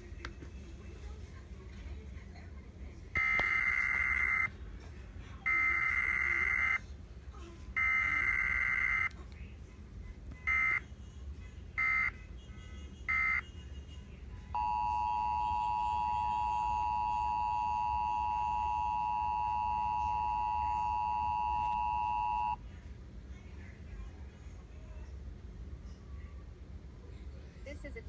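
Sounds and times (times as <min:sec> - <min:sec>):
two-tone attention signal: 0:14.6 - 0:22.6.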